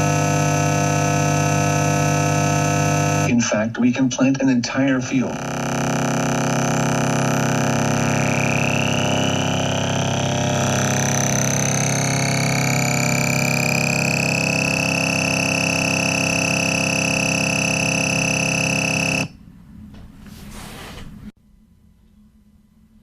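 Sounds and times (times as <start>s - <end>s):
distorted electronic drone: 0.0s - 3.6s, 4.8s - 19.3s.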